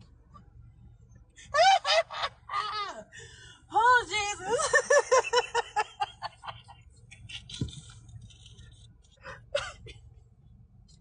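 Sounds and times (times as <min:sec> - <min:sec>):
woman laughing high-pitched: 0:01.4 - 0:03.0.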